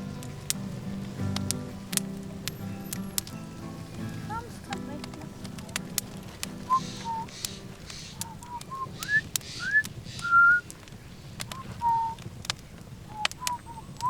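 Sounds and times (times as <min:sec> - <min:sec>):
campfire crackling: 0:00.0 - 0:14.0
short whistled notes: 0:06.7 - 0:07.3, 0:08.2 - 0:10.7.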